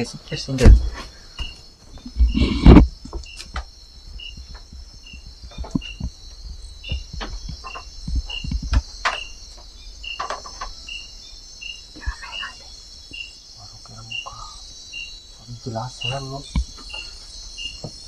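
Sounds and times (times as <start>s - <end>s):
insect chirp: 0.0s - 18.0s
insects buzzing high-pitched: 0.0s - 18.0s
knocks and rustles from people: 0.5s - 10.9s, 16.0s - 18.0s.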